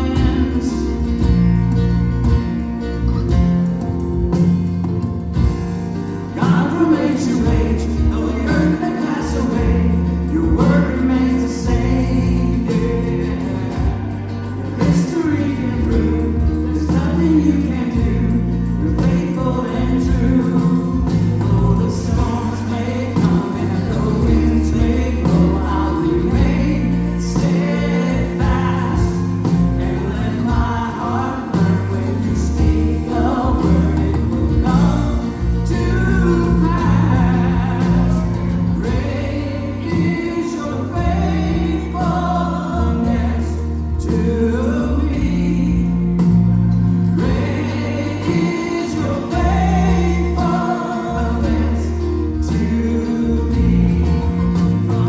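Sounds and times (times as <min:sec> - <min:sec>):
group singing gospel over band: 0:00.0 - 0:55.0
steady bass notes: 0:00.0 - 0:55.0.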